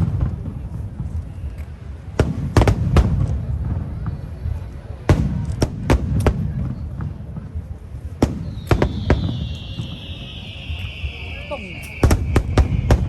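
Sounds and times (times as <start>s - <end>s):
fireworks bursting bangs: 0.0s - 13.0s
high falling whistle: 8.5s - 13.0s.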